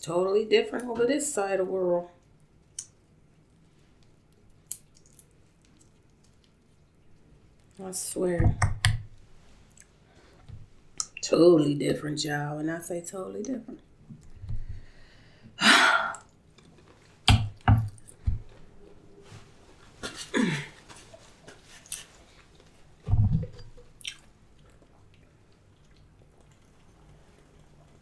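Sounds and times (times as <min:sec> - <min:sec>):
chewing and wet mouth noises: 0:02.2 - 0:07.8, 0:23.8 - 0:28.0.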